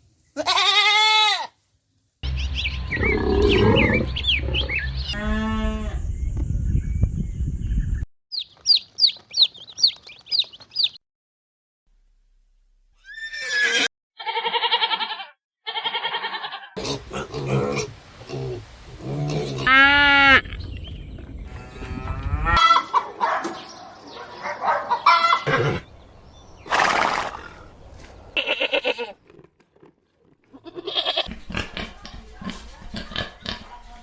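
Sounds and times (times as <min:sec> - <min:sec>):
farm livestock calling: 0:02.9 - 0:06.0, 0:26.7 - 0:27.8.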